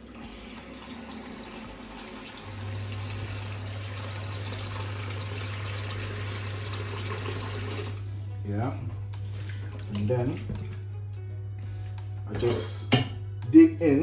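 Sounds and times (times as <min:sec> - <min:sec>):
tap water running: 0:00.0 - 0:11.1.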